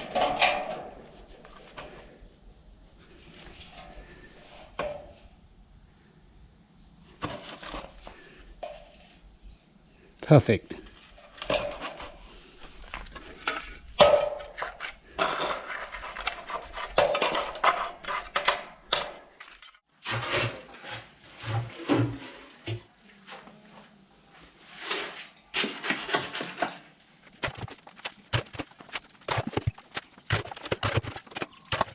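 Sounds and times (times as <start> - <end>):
trowel scraping wet concrete: 14.5 - 18.6.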